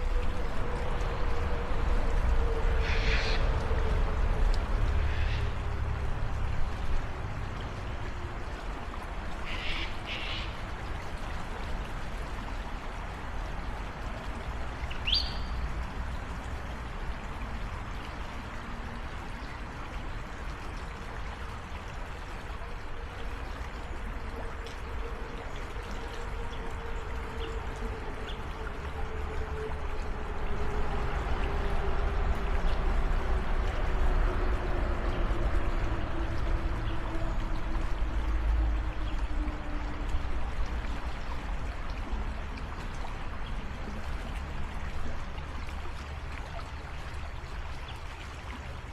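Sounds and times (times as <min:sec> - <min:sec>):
creek water rushing and trickling: 0:00.0 - 0:48.9.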